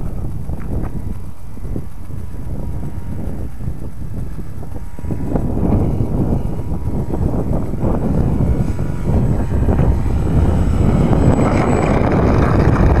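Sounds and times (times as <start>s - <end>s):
electric motor and propeller whine: 0.0s - 13.0s
wind buffeting microphone: 0.0s - 13.0s.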